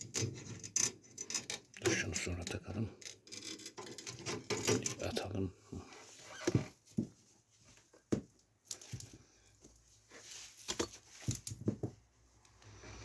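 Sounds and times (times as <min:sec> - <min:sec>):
cables and plastic connectors handled: 0:00.0 - 0:05.2, 0:07.9 - 0:12.0.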